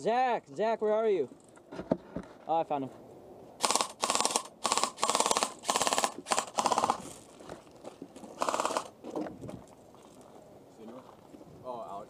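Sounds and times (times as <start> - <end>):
airsoft rifle bursts: 3.6 - 7.0, 8.4 - 9.0.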